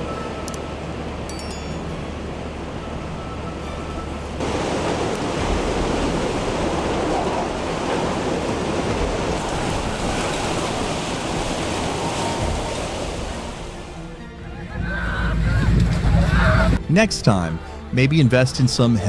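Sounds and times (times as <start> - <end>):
strong wind buffeting: 2.0 - 14.0.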